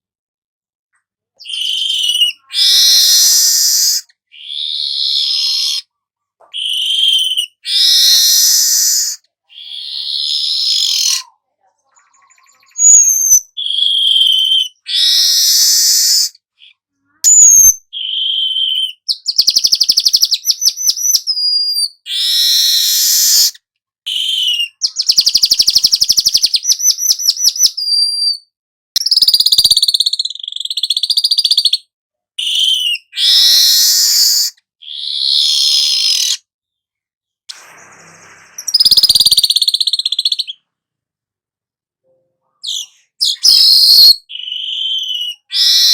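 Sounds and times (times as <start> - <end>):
weaver bird singing: 1.4 - 5.8, 11.9 - 16.3, 17.3 - 23.5, 24.1 - 28.4, 29.0 - 31.8, 37.7 - 40.6, 42.6 - 45.9
short bird whistles: 1.4 - 5.9, 6.6 - 11.3, 12.7 - 16.4, 17.3 - 31.8, 32.4 - 36.4, 37.5 - 40.6, 42.6 - 45.9
buzzy chatter and trills: 37.5 - 39.5.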